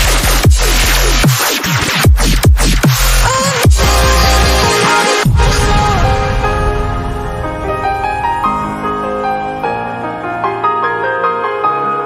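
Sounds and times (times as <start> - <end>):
electronic dance music: 0.0 - 9.8
heavy bass drops: 2.1 - 9.9
sustained synth melody: 3.8 - 10.7.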